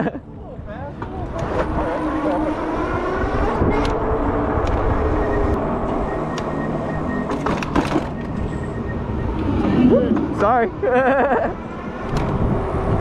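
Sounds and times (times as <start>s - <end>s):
wind on microphone: 0.6s - 5.7s, 11.7s - 13.0s.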